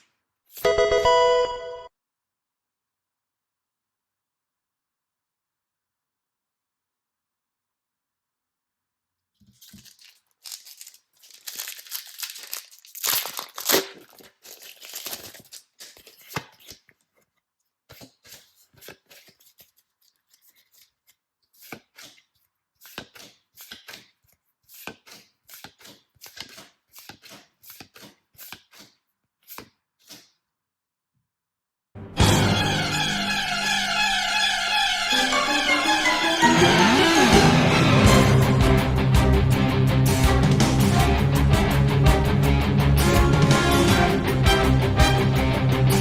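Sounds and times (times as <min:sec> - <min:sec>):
packaging torn open: 0:09.4 - 0:17.1
packaging rustling: 0:09.4 - 0:17.4.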